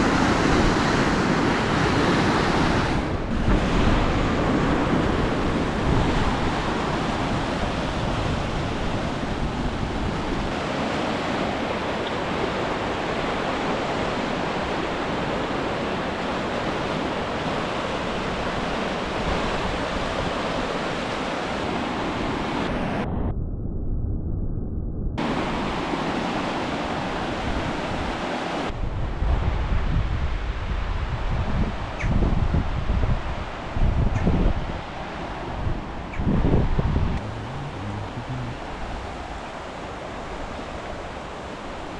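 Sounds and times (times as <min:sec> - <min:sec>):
floodwater rushing in river: 0:00.0 - 0:22.7, 0:37.2 - 0:41.9
wind rumbling on microphone: 0:00.0 - 0:41.9.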